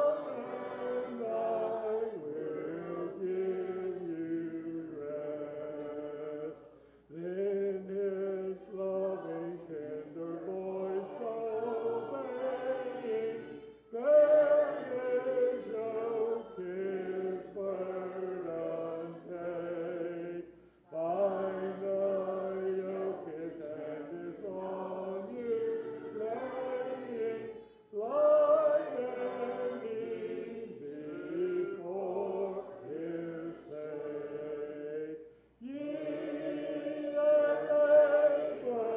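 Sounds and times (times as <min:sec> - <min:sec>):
congregation singing a hymn: 0:00.0 - 0:38.9.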